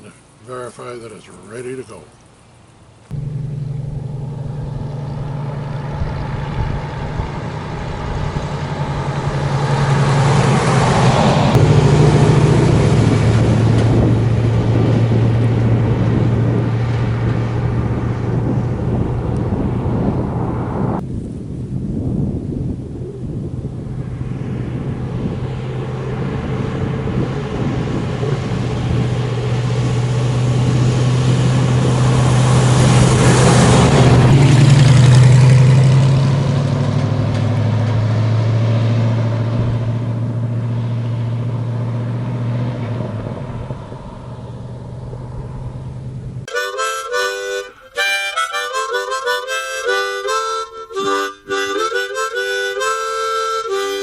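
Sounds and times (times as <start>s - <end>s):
pickup truck driving past: 3.1s - 21.0s, 23.7s - 54.0s
harmonica music: 46.5s - 54.0s.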